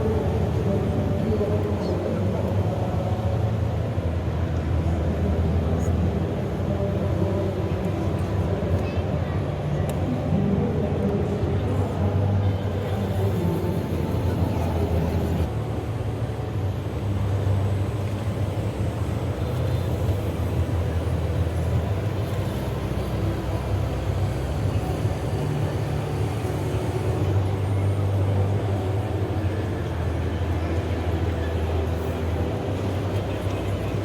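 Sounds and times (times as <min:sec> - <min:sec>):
model machines engine rumble: 0:11.3 - 0:34.0.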